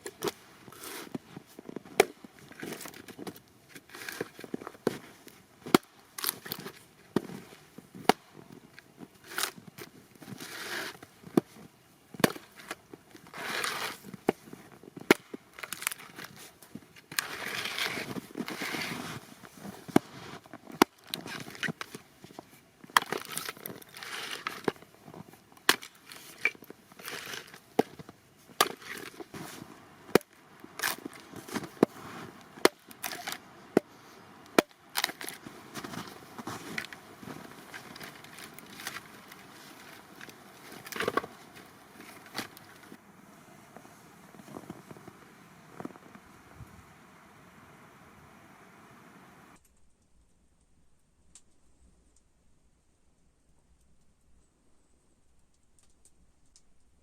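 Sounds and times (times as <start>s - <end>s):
crunching and rustling: 0.0s - 43.0s, 43.7s - 46.3s.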